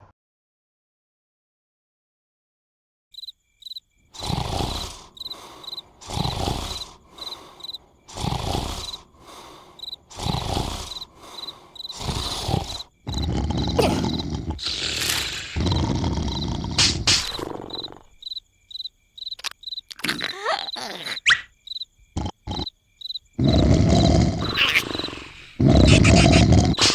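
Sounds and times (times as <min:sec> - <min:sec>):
crickets chirping: 0:03.1 - 0:26.9
cartoon character snoring: 0:04.2 - 0:18.2, 0:19.9 - 0:21.4, 0:22.2 - 0:22.7, 0:23.4 - 0:26.9.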